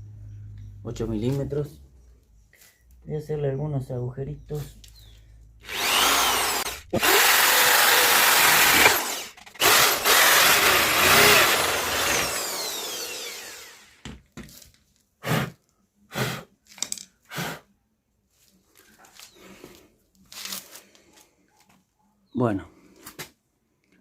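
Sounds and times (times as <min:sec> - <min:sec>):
electric drill drilling metal: 0:05.6 - 0:14.0.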